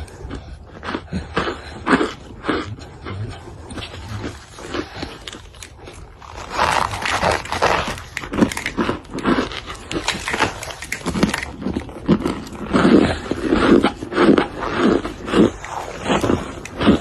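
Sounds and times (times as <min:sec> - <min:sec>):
crunching and chewing: 0:00.0 - 0:17.0.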